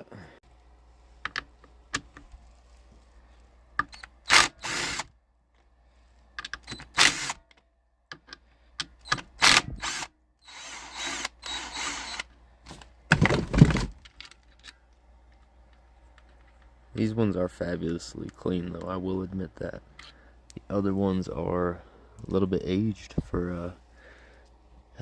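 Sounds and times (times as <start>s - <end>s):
power tool running bolts: 3.8s - 5.1s, 6.6s - 7.5s, 9.0s - 12.3s.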